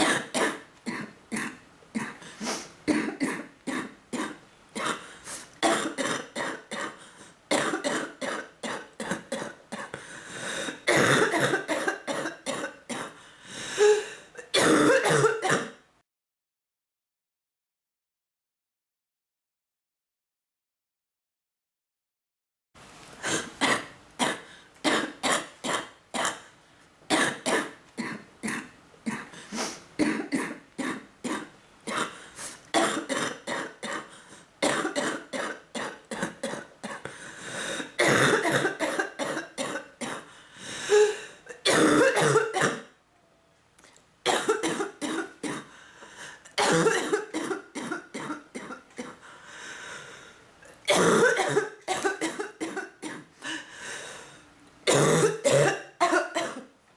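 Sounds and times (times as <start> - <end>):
person coughing rapidly: 0.0 - 13.2, 13.8 - 15.8, 23.2 - 26.5, 27.1 - 40.3, 40.9 - 42.9, 44.3 - 45.8, 46.6 - 49.2, 50.9 - 53.6, 54.9 - 56.7.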